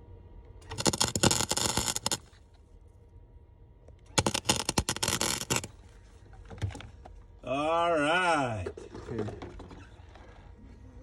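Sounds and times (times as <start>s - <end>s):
welder crackling and sputtering: 0.6s - 2.4s, 4.1s - 5.8s.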